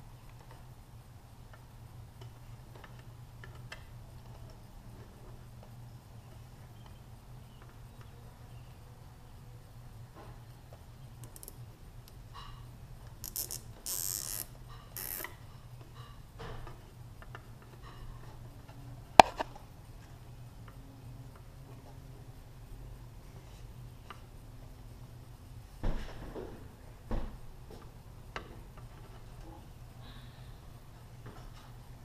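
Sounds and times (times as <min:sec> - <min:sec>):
zip ties ratcheting: 0:13.2 - 0:15.4
sharp click: 0:19.2 - 0:19.5.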